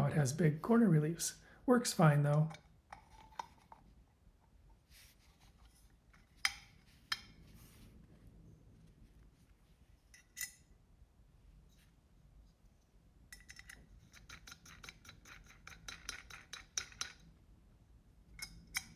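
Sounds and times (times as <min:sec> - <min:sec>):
metal parts clicking and clinking: 0:13.3 - 0:17.2.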